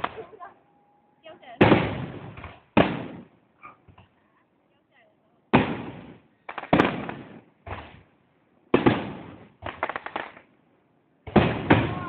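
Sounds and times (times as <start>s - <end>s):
crackling pops: 0.0s - 0.3s, 1.6s - 4.1s, 5.5s - 8.1s, 8.7s - 10.5s
fireworks bangs: 0.0s - 0.5s, 1.4s - 4.0s, 5.5s - 10.5s, 11.2s - 12.0s.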